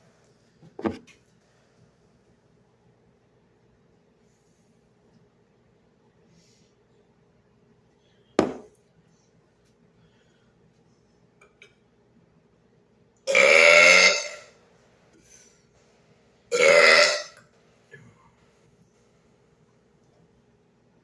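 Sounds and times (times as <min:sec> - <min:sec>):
man burping loudly: 0:13.3 - 0:14.5, 0:16.5 - 0:17.4.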